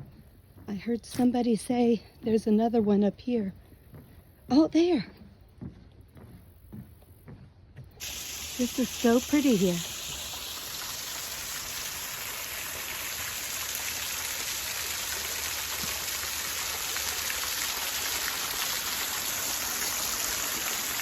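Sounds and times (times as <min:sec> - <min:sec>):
waterfall rushing: 0:08.0 - 0:21.0.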